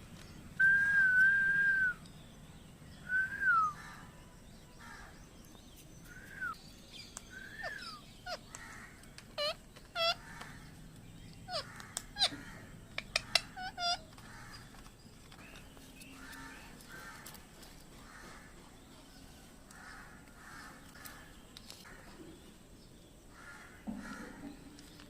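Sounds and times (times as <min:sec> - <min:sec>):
parrot squawking: 0:09.4 - 0:10.3, 0:11.5 - 0:12.5, 0:13.1 - 0:14.1.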